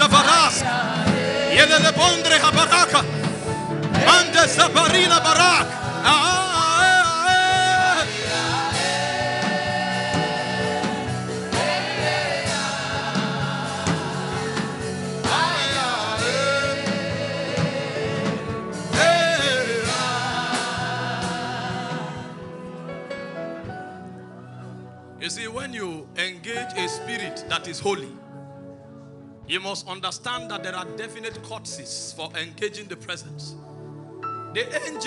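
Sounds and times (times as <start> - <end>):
gospel voices singing: 0.0 - 24.6.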